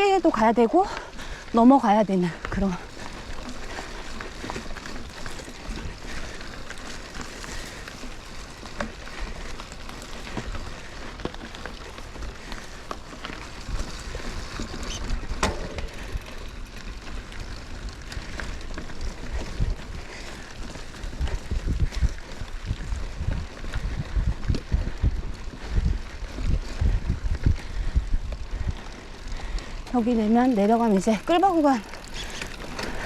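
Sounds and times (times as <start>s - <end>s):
tyres rustling on dirt: 0.0s - 27.7s, 28.3s - 33.0s
bike clicks and knocks: 3.0s - 19.6s, 29.8s - 33.0s
wind rumble on microphone: 13.3s - 33.0s.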